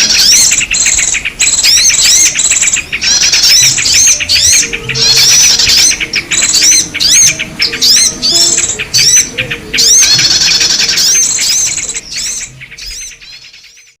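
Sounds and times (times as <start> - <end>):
buzzy bird trills: 0.0 - 14.0
songbird chirps: 0.0 - 14.0.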